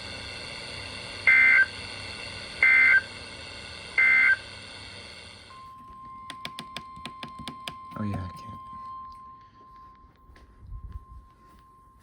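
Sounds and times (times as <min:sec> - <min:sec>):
receiver hiss: 0:00.0 - 0:08.6.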